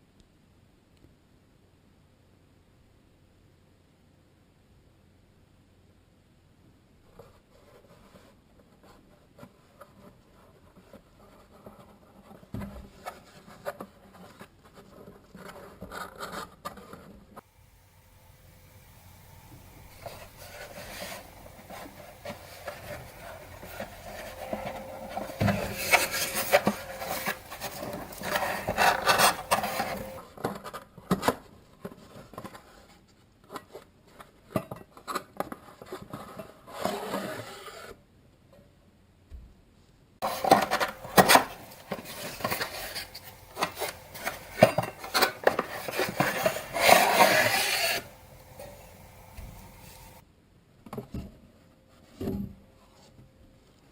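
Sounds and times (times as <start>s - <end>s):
packaging rustling and scraping: 19.6s - 30.8s, 40.2s - 50.2s.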